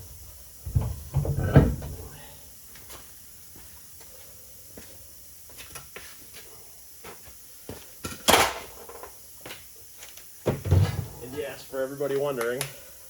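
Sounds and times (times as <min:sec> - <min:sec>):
knocks and clunks of work on wheel: 0:00.6 - 0:02.1.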